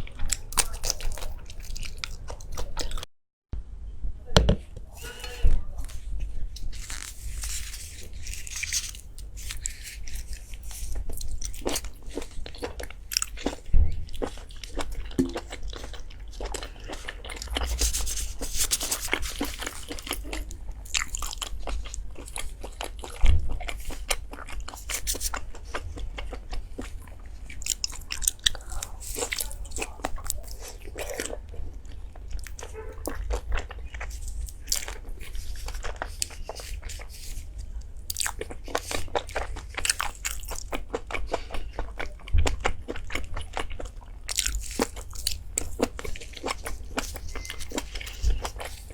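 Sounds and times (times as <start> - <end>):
crunchy food bites and chewing: 0.0 - 3.0, 6.6 - 48.9
dull thumps: 4.3 - 4.8.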